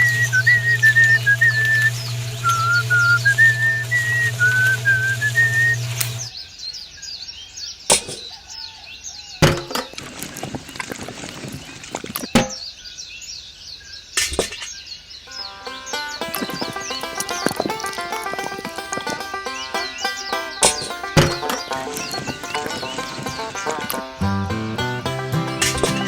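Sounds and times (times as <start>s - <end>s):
birds chirping: 0.0s - 26.0s
sharp knocks: 9.4s - 10.2s, 12.4s - 12.6s, 20.6s - 24.0s.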